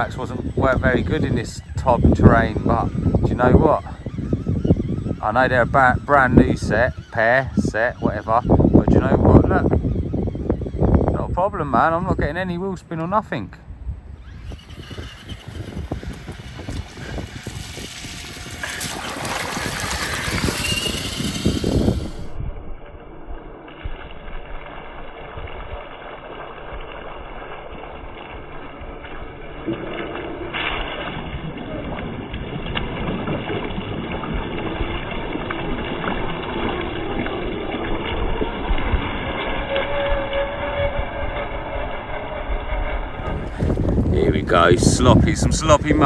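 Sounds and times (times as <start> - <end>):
toy car electric motor: 0.0 - 12.1, 14.1 - 22.4, 34.5 - 46.0
wind buffeting microphone: 0.0 - 46.0.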